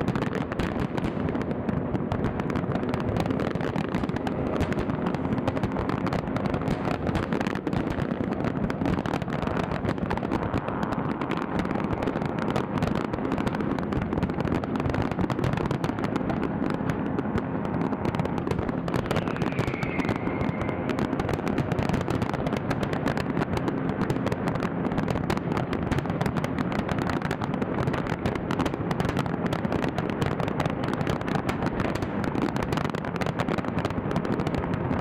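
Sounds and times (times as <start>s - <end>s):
fireworks bursts and booms: 0.0s - 35.0s
firework falling whistle: 18.9s - 21.6s.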